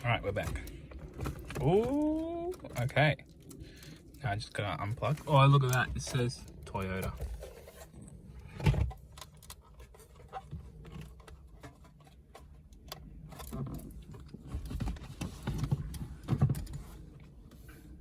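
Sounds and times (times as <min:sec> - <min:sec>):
plastic clicks and rattles of connectors: 0:00.0 - 0:04.3, 0:05.0 - 0:07.4.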